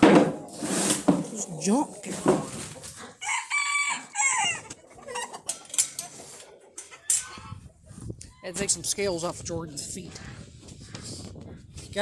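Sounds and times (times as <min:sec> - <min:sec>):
chickens clucking: 0:00.0 - 0:09.1
rooster crowing: 0:03.2 - 0:04.7.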